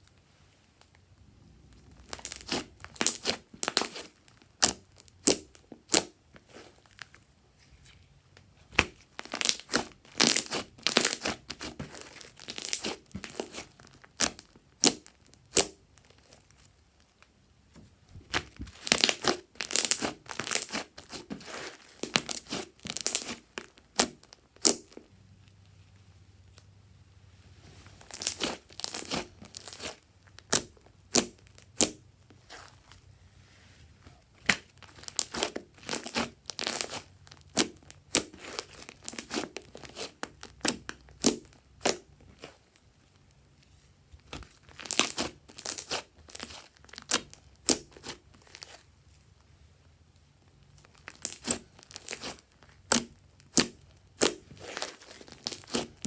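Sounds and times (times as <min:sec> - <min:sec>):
slime squished by hand: 0:01.9 - 0:07.0, 0:08.7 - 0:16.2, 0:18.2 - 0:25.0, 0:28.0 - 0:32.8, 0:34.4 - 0:42.6, 0:44.2 - 0:48.8, 0:50.9 - 0:56.0.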